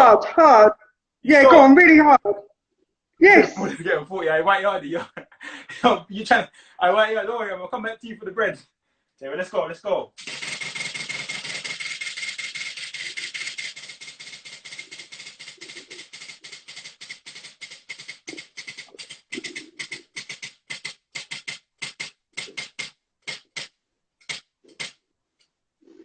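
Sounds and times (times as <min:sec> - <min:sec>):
spin wheel ticking: 0:10.2 - 0:24.9.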